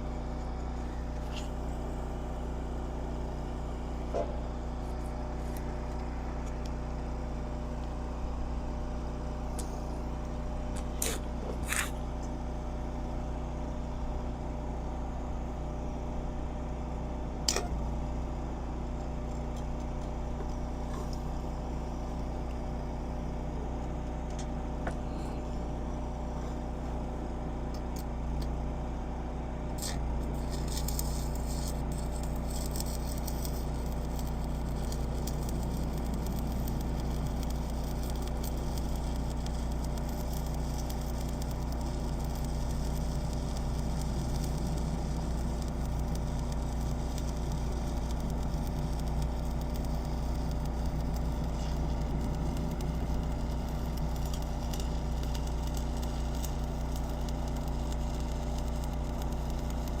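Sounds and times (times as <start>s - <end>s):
low machine hum: 0.0s - 60.0s
faint light crackle: 29.8s - 60.0s.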